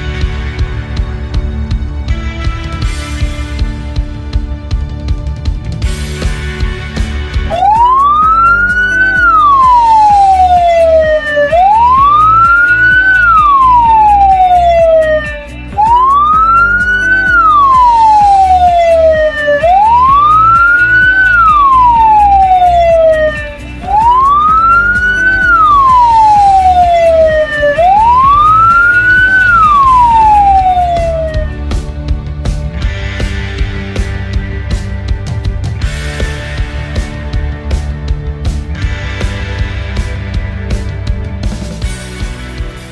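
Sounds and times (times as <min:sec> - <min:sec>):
ambulance siren wailing: 0:07.0 - 0:31.9
faint music: 0:07.4 - 0:42.0.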